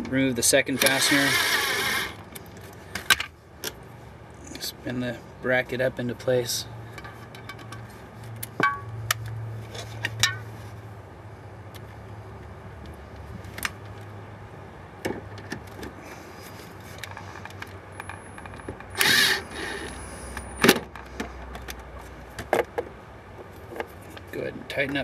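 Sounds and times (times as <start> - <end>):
rasping burst: 19.0 - 20.0.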